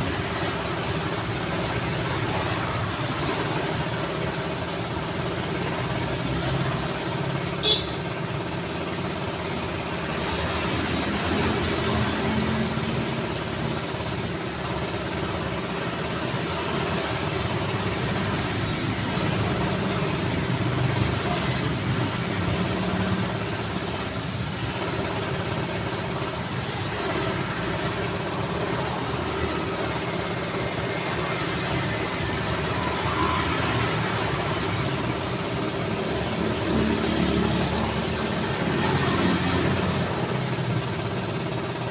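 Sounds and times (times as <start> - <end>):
city road traffic: 0.0 - 41.9.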